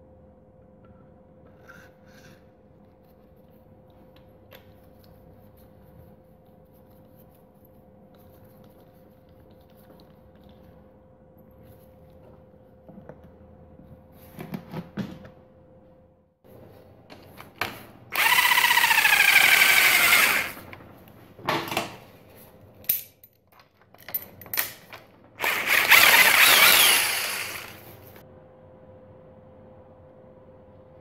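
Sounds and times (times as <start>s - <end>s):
power drill running: 18.1s - 20.7s, 25.4s - 28.2s.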